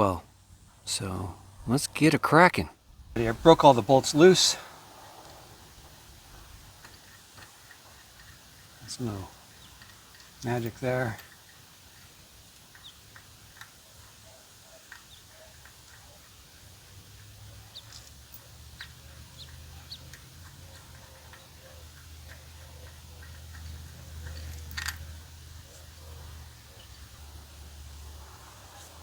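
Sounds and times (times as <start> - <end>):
low hum: 2.8 - 7.0.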